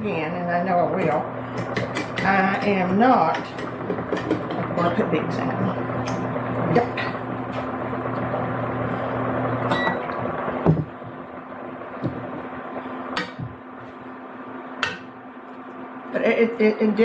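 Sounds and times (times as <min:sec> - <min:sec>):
electrical hum: 0:00.0 - 0:17.0.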